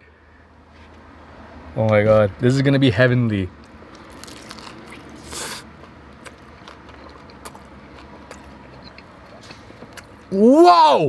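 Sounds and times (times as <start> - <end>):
crisp bite into taco: 3.6 - 10.1
chewing with wet mouth clicks: 3.6 - 10.3.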